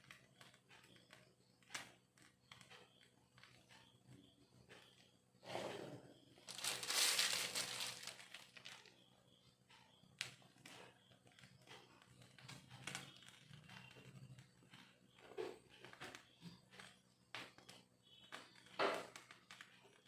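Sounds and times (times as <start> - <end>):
plastic bag crinkling: 6.4 - 8.9.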